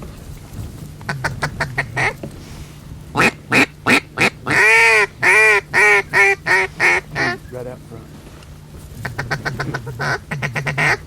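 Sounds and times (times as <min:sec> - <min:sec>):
duck call clucks: 0:01.0 - 0:02.2, 0:03.2 - 0:07.4, 0:09.0 - 0:11.0
duck call quacks: 0:01.1 - 0:02.2, 0:03.2 - 0:07.4, 0:09.0 - 0:11.0.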